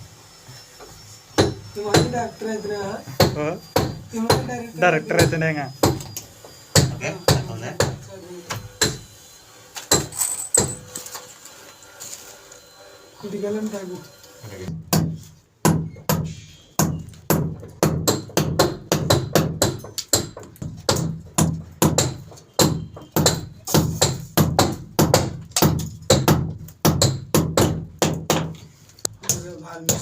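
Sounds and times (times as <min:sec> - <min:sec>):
hammer blows ringing: 0:01.4 - 0:09.1, 0:09.8 - 0:11.0, 0:14.7 - 0:28.5.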